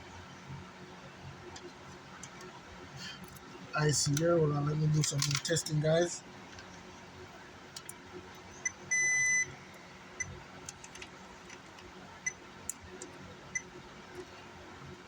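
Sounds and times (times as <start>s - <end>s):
multimeter beeping: 8.6s - 9.6s.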